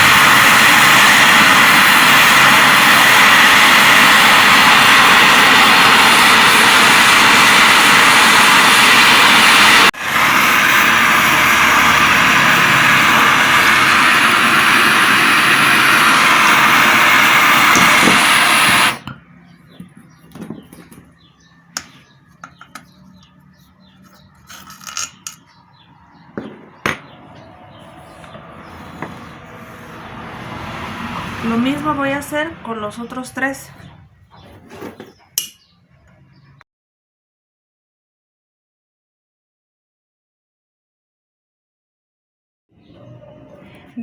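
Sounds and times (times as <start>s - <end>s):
blowtorch flame hissing: 0.0s - 19.1s, 26.1s - 33.6s
tools and metal parts clicking: 24.1s - 25.5s.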